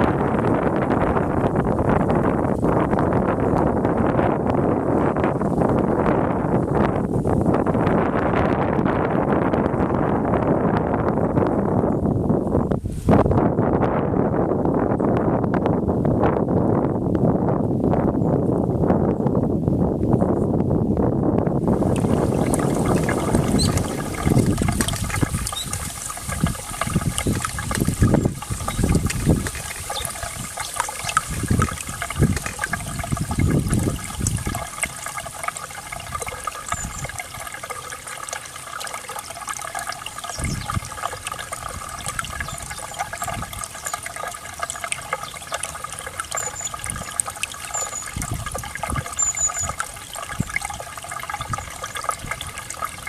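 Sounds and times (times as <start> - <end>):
water flowing and trickling: 0.0 - 10.5, 21.6 - 53.0
wind gusts on microphone: 0.0 - 37.8, 39.2 - 44.6, 46.7 - 53.0.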